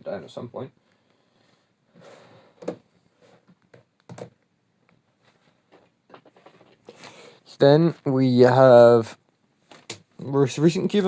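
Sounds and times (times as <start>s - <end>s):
soft rustle: 5.0s - 7.2s.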